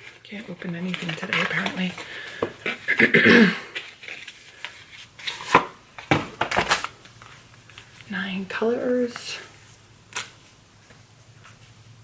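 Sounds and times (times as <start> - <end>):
packaging being opened by hand: 0.0 - 3.1, 3.7 - 8.1
person clearing throat: 2.9 - 3.8.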